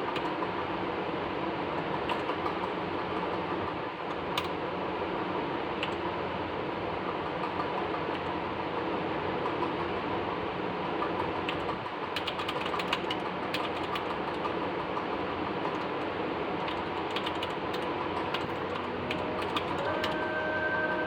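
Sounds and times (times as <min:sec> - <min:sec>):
mechanical keyboard key clacks: 0:11.0 - 0:14.6, 0:15.6 - 0:20.2
steady background hiss: 0:14.5 - 0:21.0.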